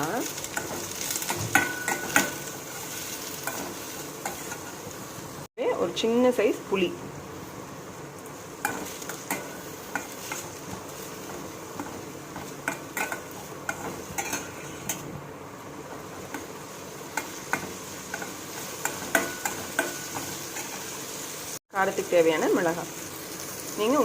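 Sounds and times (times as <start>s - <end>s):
onions sizzling in a pan: 0.0s - 24.0s
spoon scraping a pan: 0.4s - 4.9s, 8.6s - 15.1s, 17.1s - 21.0s.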